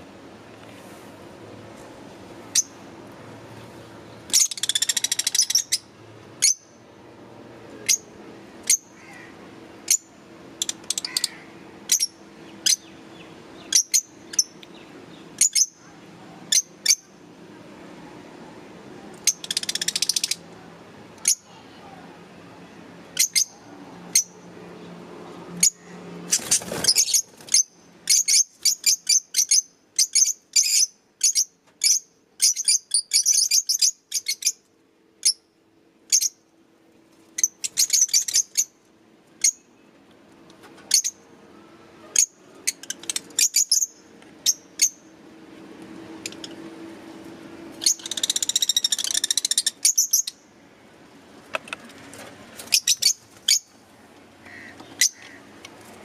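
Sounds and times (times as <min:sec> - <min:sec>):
lovebirds chirping: 0:47.8 - 0:50.6, 0:52.6 - 0:55.5.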